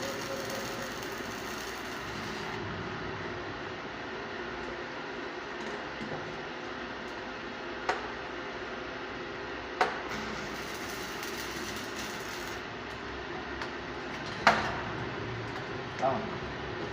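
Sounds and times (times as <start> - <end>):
arc welding hiss: 0.0 - 2.6, 10.1 - 12.7.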